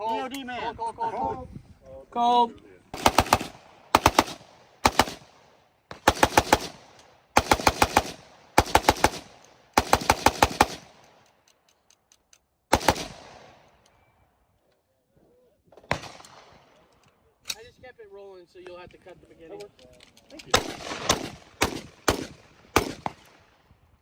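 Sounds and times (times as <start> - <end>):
automatic gunfire bursts: 3.0 - 5.3, 5.9 - 10.9, 12.7 - 13.4, 20.5 - 23.2.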